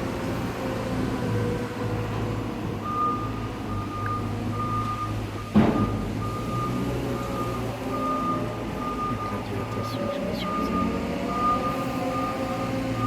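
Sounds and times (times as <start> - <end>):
engine humming: 0.0 - 13.0
reversing alarm beeping: 2.8 - 13.0
loud clunk: 5.5 - 6.0.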